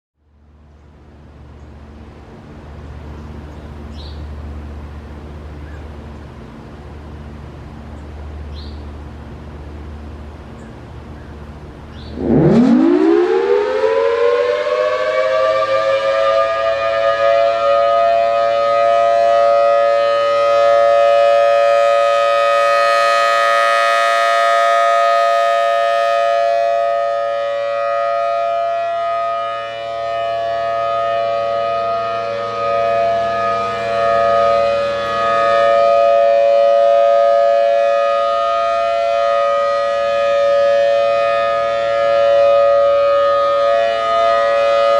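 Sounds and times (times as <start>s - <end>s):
warning siren rising to steady tone: 12.0s - 44.9s.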